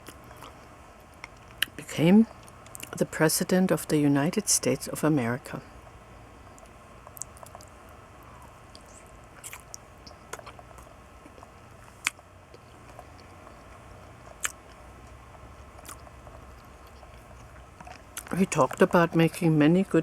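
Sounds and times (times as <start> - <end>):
person chewing: 0.0 - 1.7, 6.6 - 18.3
wet mouth clicks: 6.6 - 7.7, 8.7 - 13.3, 14.3 - 14.8.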